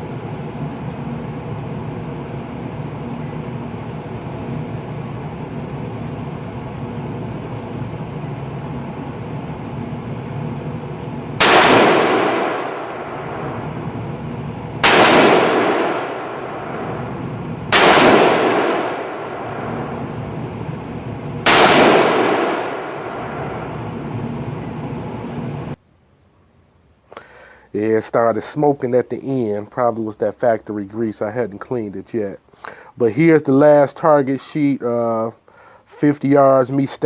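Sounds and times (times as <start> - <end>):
steady background noise: 0.0 - 37.0
rifle shots: 11.4 - 14.1, 14.8 - 20.6, 21.4 - 23.9.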